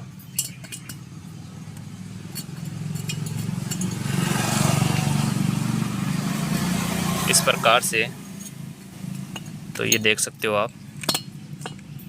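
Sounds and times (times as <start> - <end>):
vehicle engine passing by: 1.0 - 9.9.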